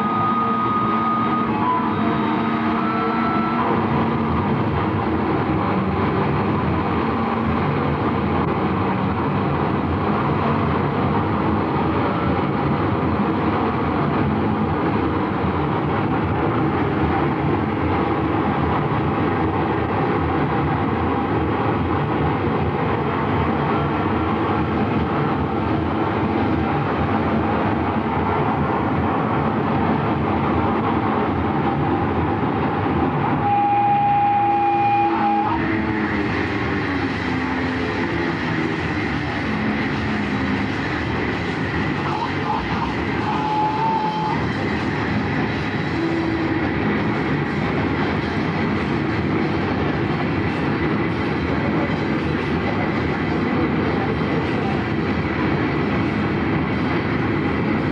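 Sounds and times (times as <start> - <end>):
high tone: 0.0 - 3.8, 42.0 - 44.5
moving vehicle rumbling: 0.0 - 57.9.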